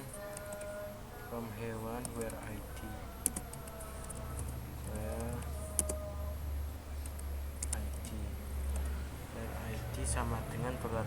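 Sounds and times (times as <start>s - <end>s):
steady low hum: 0.0s - 11.0s
typing on a keyboard: 0.3s - 0.8s.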